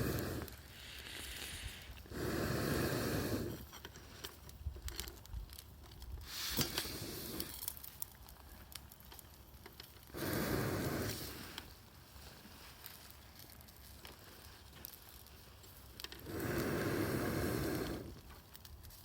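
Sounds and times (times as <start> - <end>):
breathy rushing noise: 0.0 - 3.6
campfire crackling and popping: 0.0 - 19.0.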